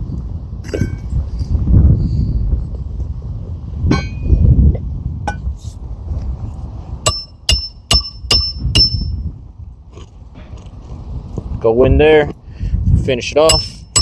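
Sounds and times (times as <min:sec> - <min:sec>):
ringing hammer blows: 0:07.0 - 0:09.2, 0:13.4 - 0:14.0
hammer clinking on metal: 0:07.1 - 0:09.1, 0:13.5 - 0:14.0.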